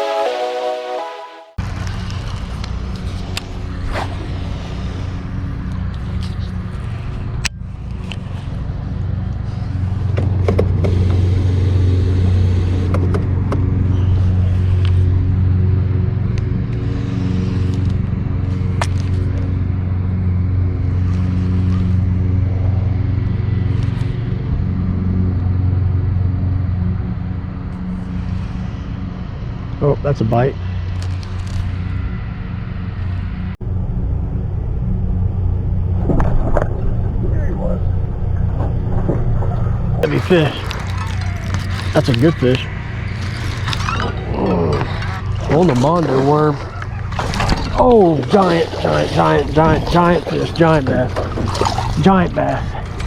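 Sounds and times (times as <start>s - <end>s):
boat motor humming: 0.0s - 53.0s.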